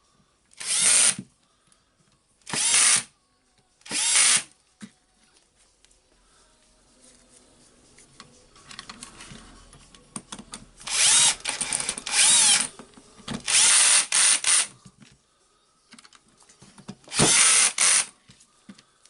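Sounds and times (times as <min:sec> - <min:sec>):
power screwdriver whine: 0:00.6 - 0:01.2, 0:02.5 - 0:03.0, 0:03.9 - 0:04.5, 0:10.9 - 0:12.7, 0:13.4 - 0:14.7, 0:17.1 - 0:18.1.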